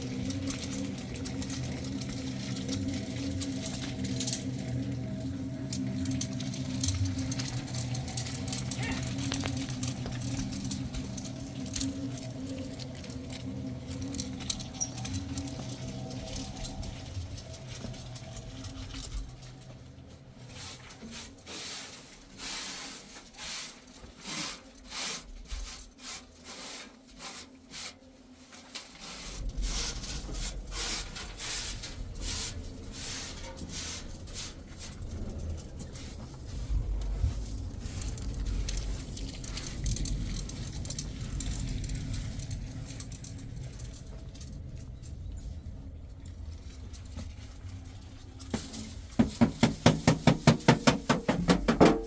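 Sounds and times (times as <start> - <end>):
heavy rain pattering: 0.0 - 20.4, 29.5 - 45.2
low rumble of wind: 0.0 - 21.5, 29.1 - 52.0.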